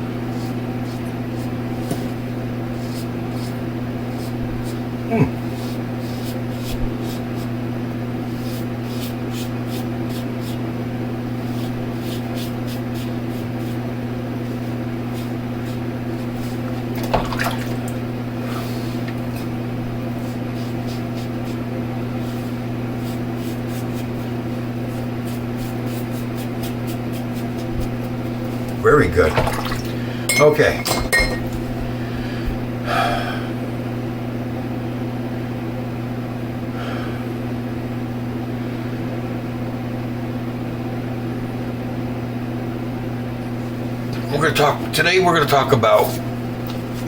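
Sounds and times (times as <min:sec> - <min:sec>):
low electrical hum: 0:00.0 - 0:47.0
shaving brush wet squishing: 0:00.2 - 0:07.6, 0:08.2 - 0:10.7, 0:11.3 - 0:19.5, 0:20.1 - 0:30.1, 0:44.1 - 0:47.0.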